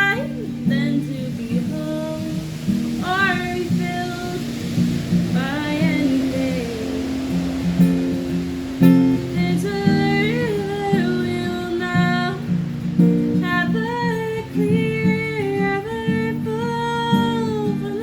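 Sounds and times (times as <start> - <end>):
person singing: 0.0 - 7.7, 9.2 - 12.5
strummed acoustic guitar: 0.0 - 18.0.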